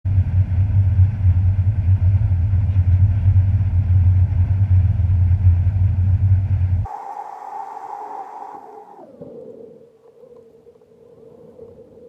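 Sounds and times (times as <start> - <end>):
pickup truck engine running: 0.1 - 6.8.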